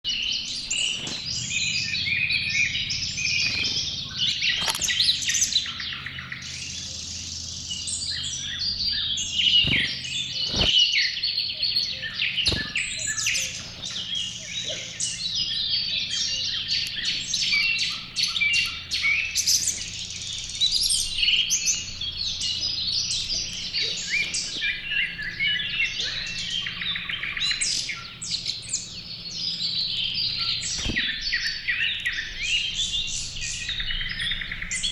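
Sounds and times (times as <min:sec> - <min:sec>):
songbirds chorus: 0:00.0 - 0:34.9.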